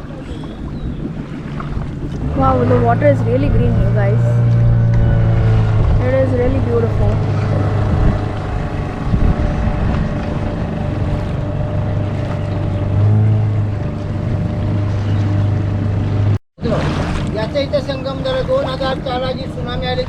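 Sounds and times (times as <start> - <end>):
wind on microphone: 0.0 - 18.4
motorboat engine droning: 0.0 - 20.0.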